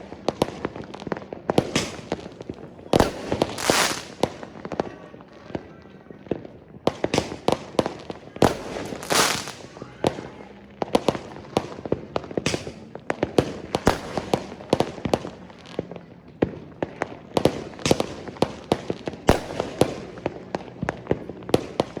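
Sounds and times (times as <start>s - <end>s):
firecrackers banging: 0.0s - 22.0s
firework hissing burst: 8.6s - 9.7s.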